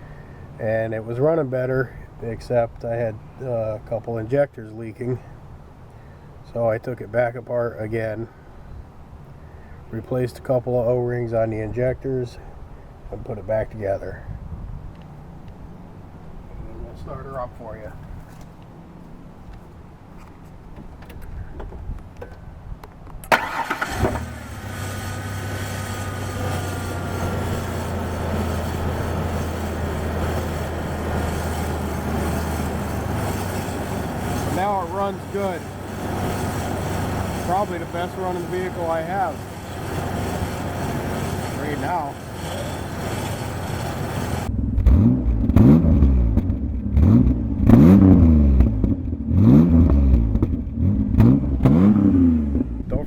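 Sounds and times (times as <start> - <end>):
car engine starting and idling: 23.2 - 53.0.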